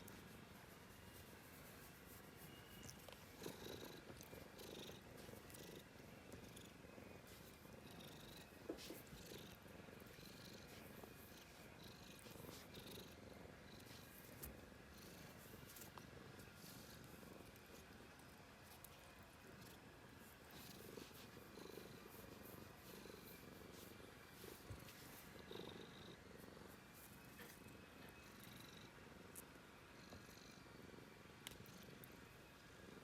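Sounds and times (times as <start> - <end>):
cat purring: 0.0 - 33.0
small clicks and rustles: 15.5 - 18.0.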